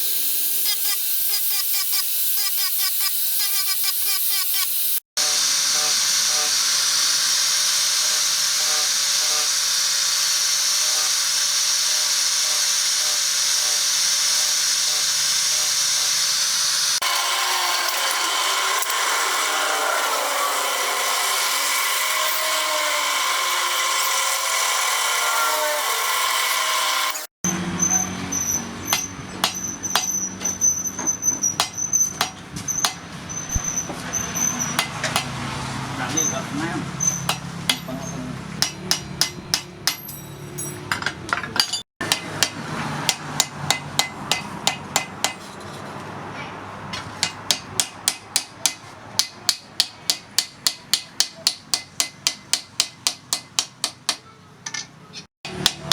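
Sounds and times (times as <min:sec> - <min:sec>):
grinder on steel blade: 0:00.0 - 0:40.2
sharp metallic strikes and taps: 0:28.9 - 0:30.2, 0:31.6 - 0:33.0, 0:34.8 - 0:35.4, 0:37.2 - 0:45.5, 0:46.9 - 0:55.9.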